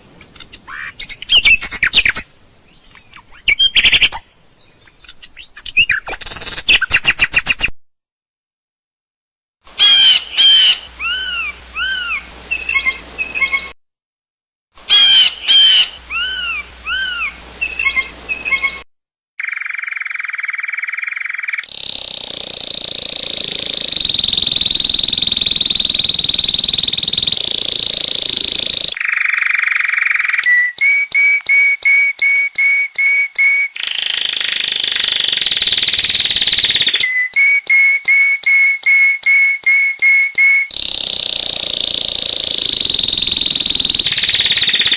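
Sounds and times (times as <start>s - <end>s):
birds chirping: 0.0s - 7.7s, 19.4s - 38.3s, 40.0s - 44.9s
high-pitched bird whistles: 3.3s - 4.2s, 19.4s - 44.9s
rapid repeated bird whistles: 3.3s - 4.2s, 19.4s - 44.9s.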